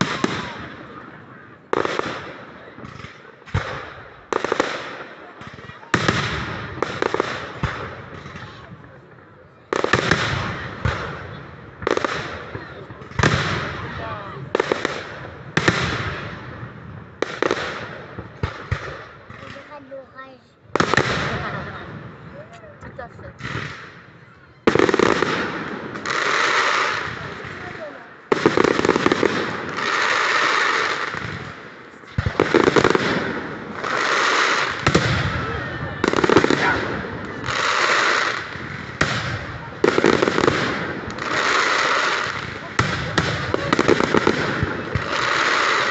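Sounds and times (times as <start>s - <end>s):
fireworks bangs and cracks: 0.0s - 45.9s
fireworks crackling hiss: 24.7s - 45.9s.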